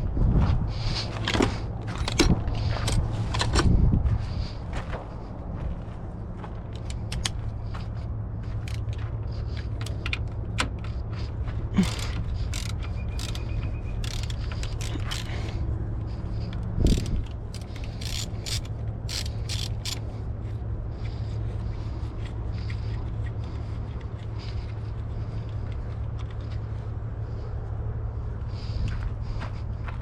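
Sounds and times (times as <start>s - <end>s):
steady low hum: 0.0s - 30.0s
ratchet wrench clicking: 11.8s - 15.7s, 16.3s - 20.3s.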